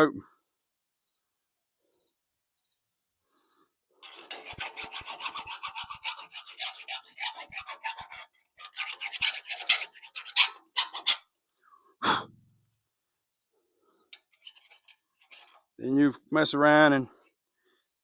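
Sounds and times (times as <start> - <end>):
metal file scraping steel: 4.0 - 11.3, 14.1 - 15.8.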